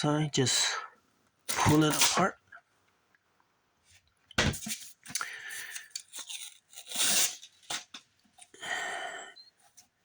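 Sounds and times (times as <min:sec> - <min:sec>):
glued book binding ripping: 0:05.0 - 0:07.9.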